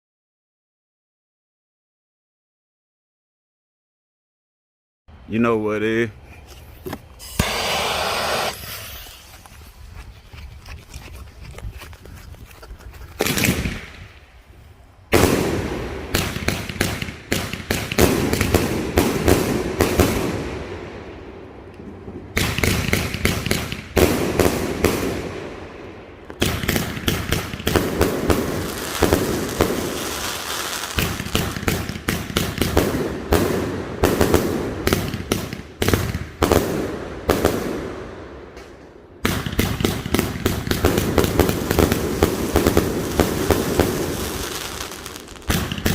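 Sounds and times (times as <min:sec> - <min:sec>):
firework cake bangs and crackle: 0:13.2 - 0:14.0, 0:15.1 - 0:21.1, 0:22.2 - 0:25.6, 0:26.3 - 0:37.9, 0:39.2 - 0:45.9.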